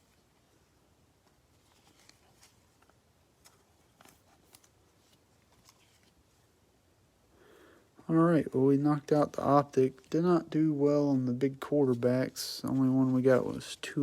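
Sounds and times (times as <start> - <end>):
trading cards clicking and rustling: 1.6 - 6.2.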